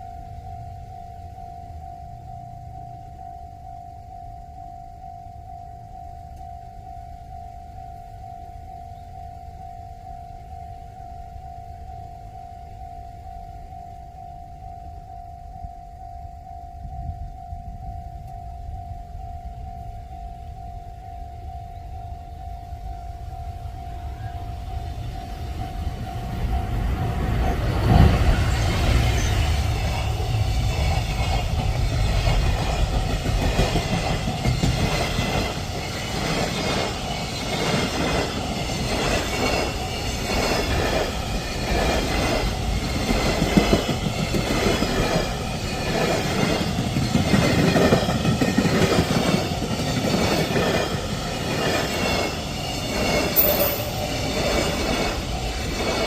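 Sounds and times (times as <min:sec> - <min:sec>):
train wheels clickety-clack on rail: 0:21.8 - 0:56.0.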